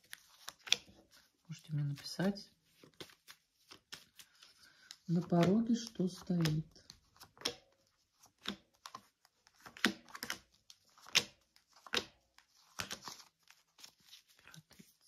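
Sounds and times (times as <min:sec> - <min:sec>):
cards snapping and clicking: 0:00.1 - 0:01.0, 0:04.8 - 0:13.2.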